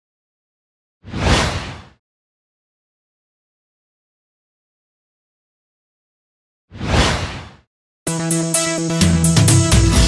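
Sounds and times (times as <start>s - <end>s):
whoosh sound effect: 1.1s - 2.0s.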